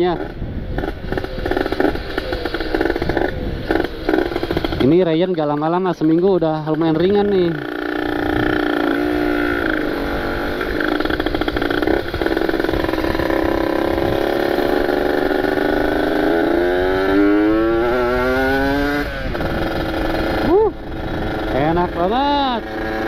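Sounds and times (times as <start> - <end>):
wind on microphone: 0.0 - 5.3, 5.9 - 23.0
two-stroke motorcycle engine revving: 0.0 - 23.0.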